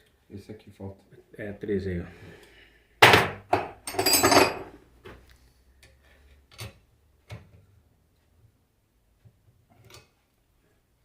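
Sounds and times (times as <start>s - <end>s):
metal tools clinking on workbench: 3.6s - 4.8s.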